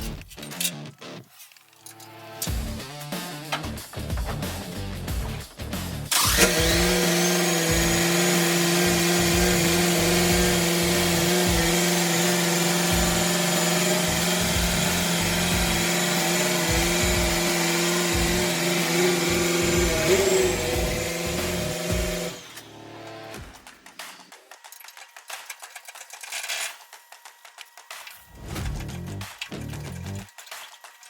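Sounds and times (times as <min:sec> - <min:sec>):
power tool motor whining: 0:06.1 - 0:28.3.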